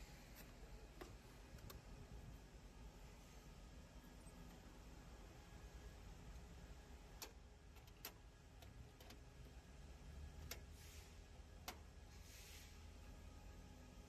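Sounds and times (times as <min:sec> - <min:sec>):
faint low hum: 0:00.0 - 0:14.0
faint irregular clicks: 0:00.3 - 0:01.8, 0:07.2 - 0:09.6, 0:11.6 - 0:11.9.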